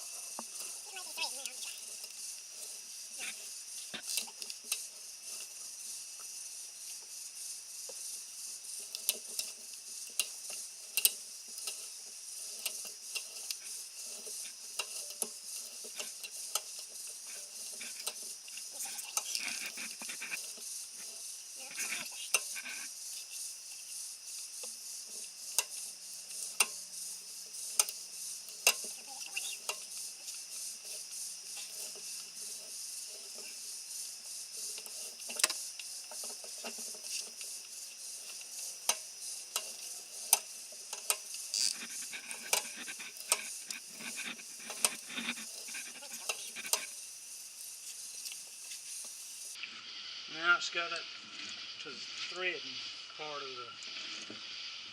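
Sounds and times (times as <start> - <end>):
cutter scraping metal threads: 8.8 - 22.9, 38.2 - 46.9.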